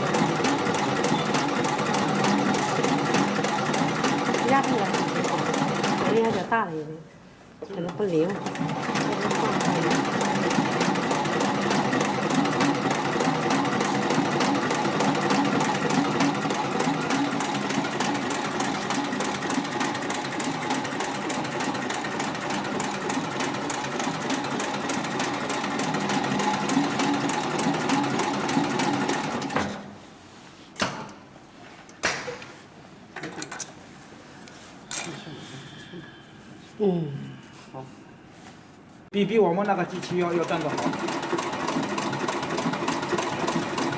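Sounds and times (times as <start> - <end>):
sewing machine stitching clatter: 0.0 - 6.5, 8.3 - 29.8, 40.0 - 43.9.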